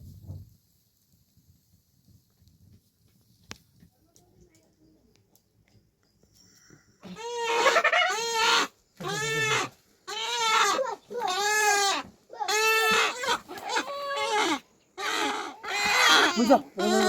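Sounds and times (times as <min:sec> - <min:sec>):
goat bleating: 0:07.0 - 0:17.0.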